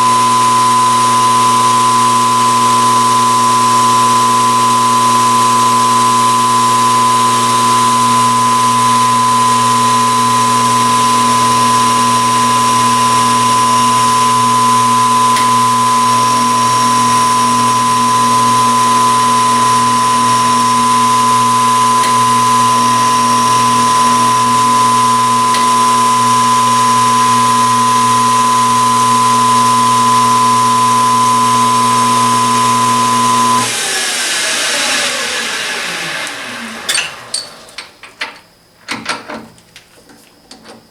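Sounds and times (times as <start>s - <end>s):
machine tool motor whining: 5.6s - 38.4s.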